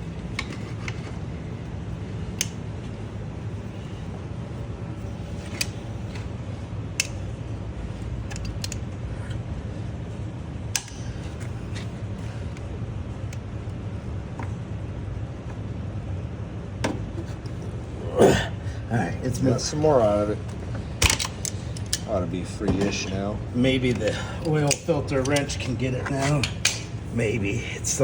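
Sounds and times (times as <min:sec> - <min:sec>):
low mechanical hum: 0:00.0 - 0:28.0
metal clicks and snaps: 0:07.0 - 0:07.2, 0:08.3 - 0:08.8, 0:10.7 - 0:11.1, 0:24.6 - 0:25.7.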